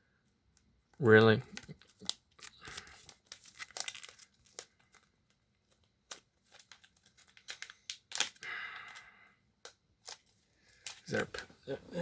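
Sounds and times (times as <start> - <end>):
foil wrapper crinkling: 1.4 - 9.1.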